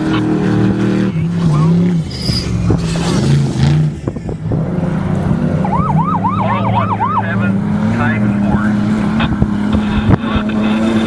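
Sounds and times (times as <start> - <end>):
vehicle engine running: 0.0 - 11.0
siren yelp: 5.6 - 7.4.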